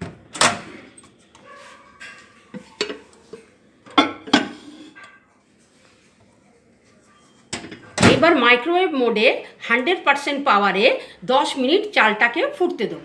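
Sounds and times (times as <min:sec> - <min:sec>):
dishes clinking and knocking: 0:02.0 - 0:05.2, 0:07.5 - 0:08.1.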